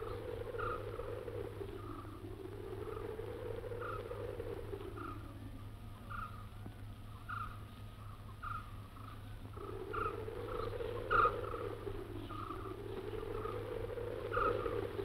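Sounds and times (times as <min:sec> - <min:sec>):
low hum: 0:00.0 - 0:15.0
animal chirping call: 0:07.2 - 0:15.0.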